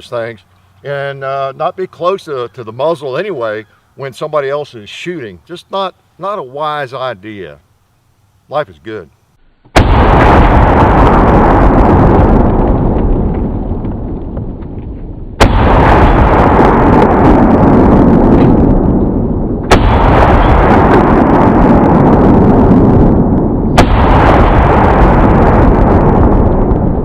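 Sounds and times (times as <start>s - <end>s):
rifle shots with rumble: 9.8s - 27.0s.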